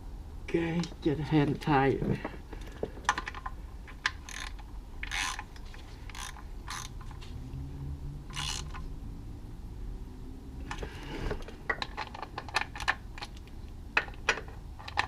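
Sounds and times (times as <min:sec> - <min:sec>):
socket ratchet clicking: 0:04.0 - 0:07.2, 0:08.3 - 0:08.9.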